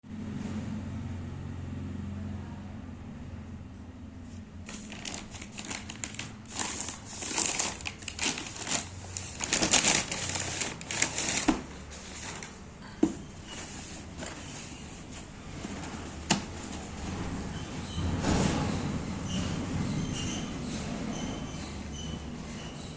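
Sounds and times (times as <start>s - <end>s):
packaging crinkling and rustling: 4.7s - 17.2s.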